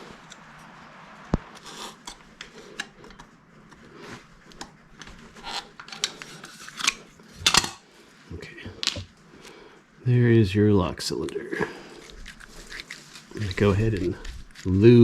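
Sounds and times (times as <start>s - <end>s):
metal parts clicking and scraping: 5.0s - 7.8s.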